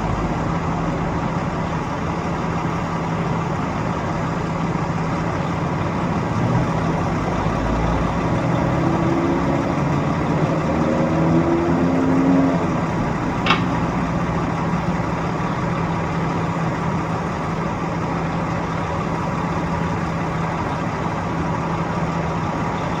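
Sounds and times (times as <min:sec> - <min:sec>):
heavy machinery engine running: 0:00.0 - 0:23.0.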